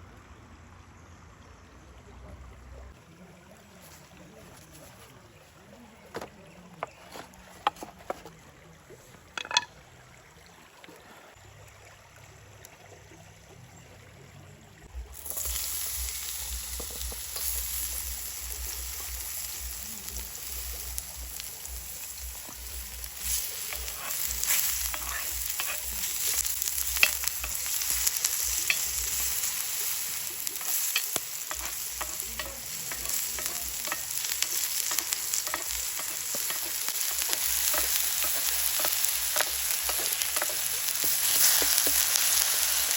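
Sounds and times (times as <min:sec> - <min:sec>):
food sizzling in oil: 0:15.0 - 0:42.9.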